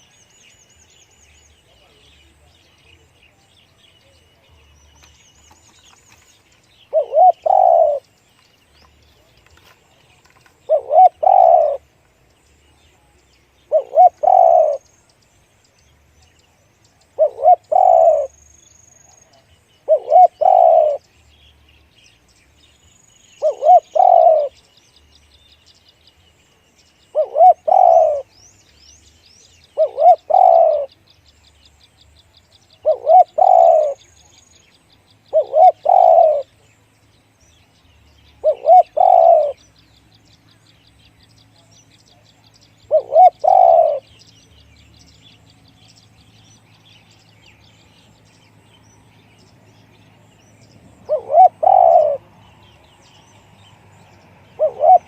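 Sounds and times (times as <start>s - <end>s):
small birds chirping: 0.0s - 55.0s
dove cooing: 6.8s - 8.0s, 10.5s - 11.9s, 13.7s - 14.8s, 17.1s - 18.4s, 19.3s - 21.0s, 23.4s - 24.6s, 27.1s - 28.3s, 29.8s - 30.9s, 32.8s - 34.1s, 35.3s - 36.5s, 38.4s - 39.6s, 42.9s - 44.2s, 51.0s - 53.4s, 54.4s - 55.0s.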